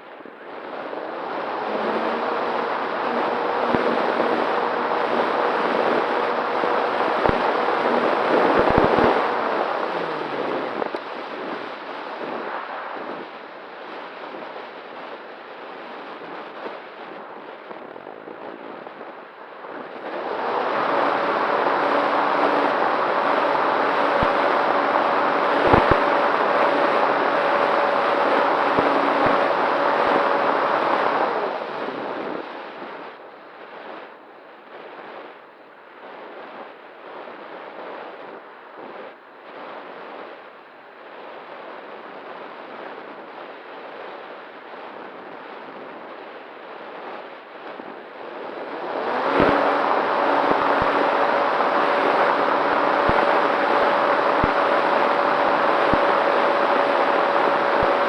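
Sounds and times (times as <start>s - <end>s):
electric motor and propeller whine: 0.5s - 11.5s, 19.9s - 32.0s, 48.4s - 58.0s.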